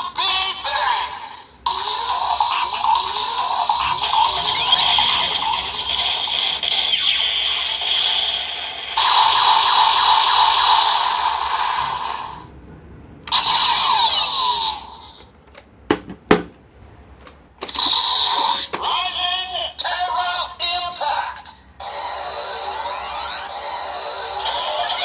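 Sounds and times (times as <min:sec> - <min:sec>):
toy belt electronic sound effects: 0:01.7 - 0:12.2, 0:13.3 - 0:15.3, 0:17.6 - 0:20.3, 0:21.8 - 0:25.0.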